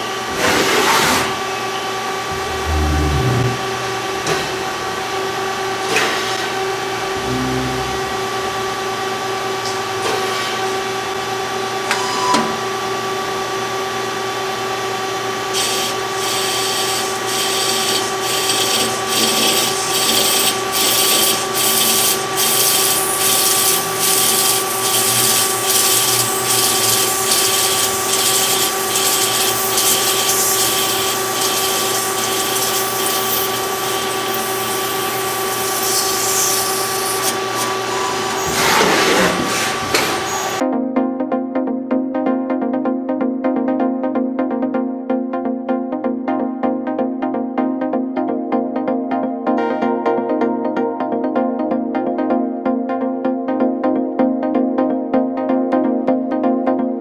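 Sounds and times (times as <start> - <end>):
machine tool humming and whining: 1.6 - 38.6
fluttering hiss of tool cutting: 15.6 - 37.8.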